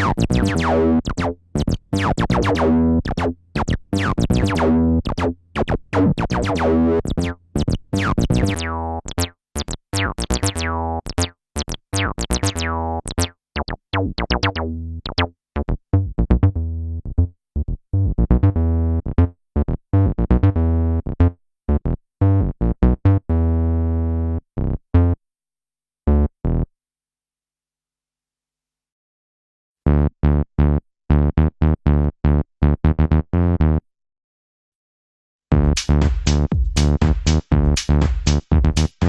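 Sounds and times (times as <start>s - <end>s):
staccato synth bassline: 0.0s - 20.6s, 35.5s - 39.0s.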